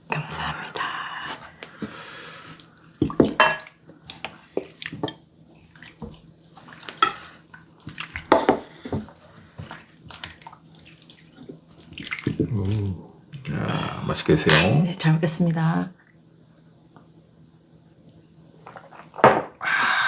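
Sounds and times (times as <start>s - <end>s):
liquid splashing and dripping: 5.7s - 8.5s, 9.5s - 12.8s
utensils clinking on dishes: 14.5s - 15.0s.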